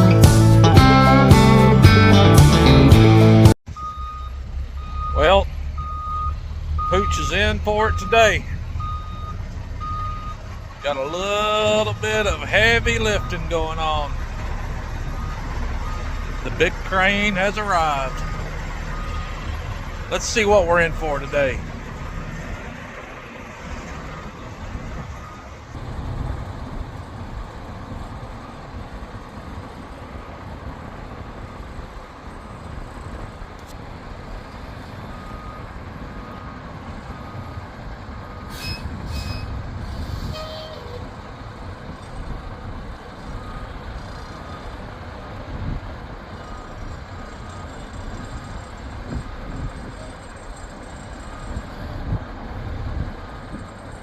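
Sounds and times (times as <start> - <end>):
diesel engine rumbling: 0.0 - 54.0
back-up alarm beeping: 3.7 - 21.6.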